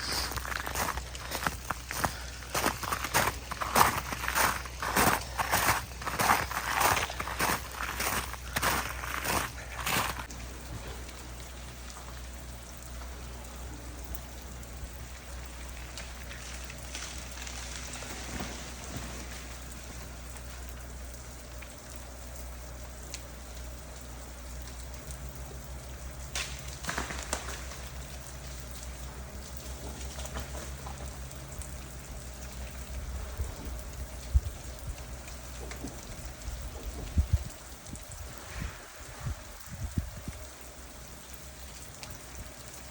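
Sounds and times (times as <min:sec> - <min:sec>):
drops and ice pattering: 0:00.0 - 0:39.2
ice ticks and clatters: 0:00.0 - 0:39.2.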